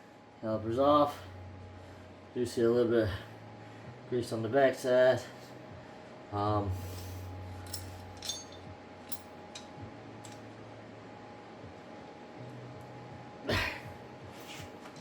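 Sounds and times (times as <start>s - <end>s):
steady low hum: 0.0s - 15.0s
tools clicking and tapping: 7.7s - 10.4s.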